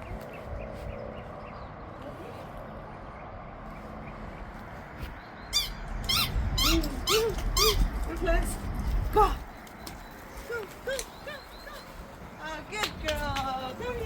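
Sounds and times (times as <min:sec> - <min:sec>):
dog yipping: 0:05.5 - 0:07.9.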